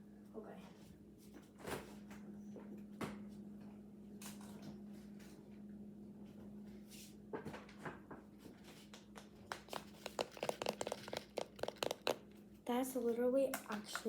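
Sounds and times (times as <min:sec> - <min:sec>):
steady low hum: 0:00.0 - 0:14.0
clicks and crinkles: 0:08.6 - 0:12.2
tapping hard squishy toy: 0:09.4 - 0:12.2.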